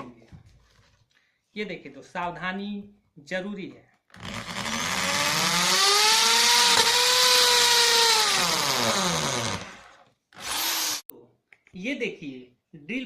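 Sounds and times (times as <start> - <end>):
electric drill whining: 4.2 - 11.1.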